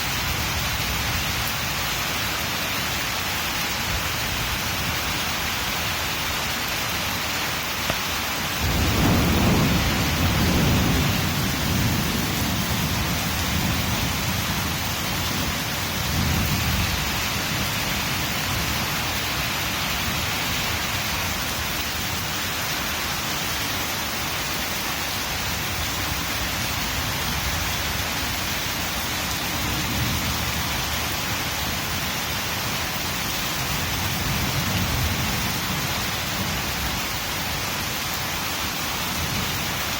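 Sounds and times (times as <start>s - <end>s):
heavy rain: 0.0s - 39.9s
thunder rumbling: 8.5s - 19.4s.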